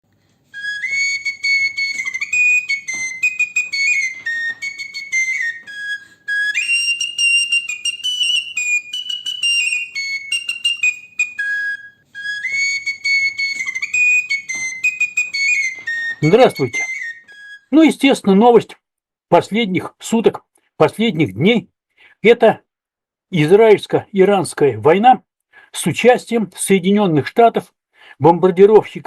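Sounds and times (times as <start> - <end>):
whistle-like wind instrument melody: 0.4 - 17.8.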